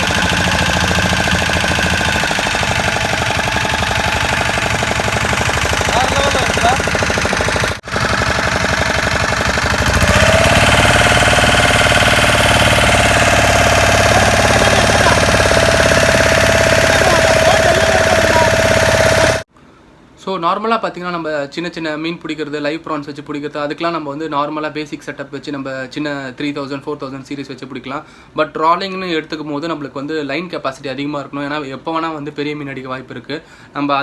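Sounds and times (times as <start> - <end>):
steady whine: 0.0 - 7.8, 10.2 - 19.5
engine running with pulsing beat: 0.0 - 19.5.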